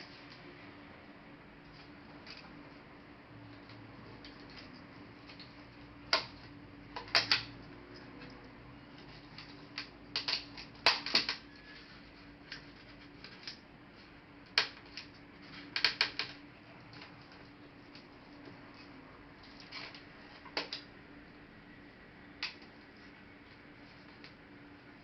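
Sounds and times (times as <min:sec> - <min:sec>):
clicks and taps of laptop parts: 0:06.1 - 0:07.6, 0:09.3 - 0:11.5, 0:14.5 - 0:17.1, 0:22.4 - 0:22.7.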